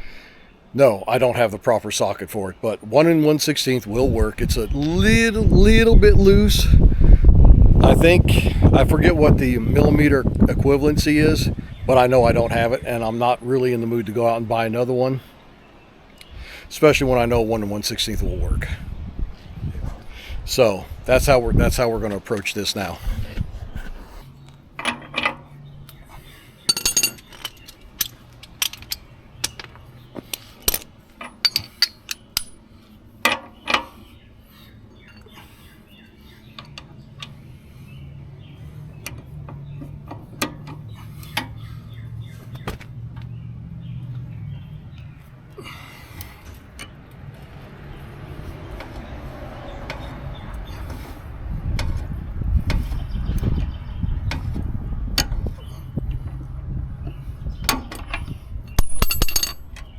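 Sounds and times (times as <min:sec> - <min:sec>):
wrench clinking on metal: 0:24.8 - 0:26.0, 0:26.7 - 0:32.6, 0:57.7 - 0:59.9.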